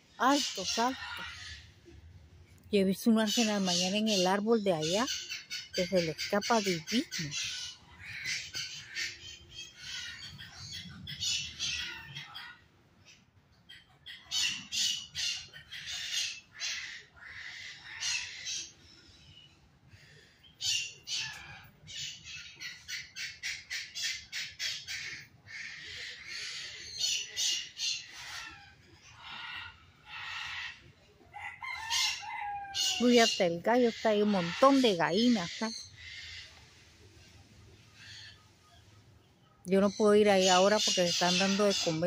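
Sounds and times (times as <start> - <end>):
parrots squawking: 13.9 - 18.8, 20.6 - 30.8, 31.4 - 36.5, 39.8 - 42.0.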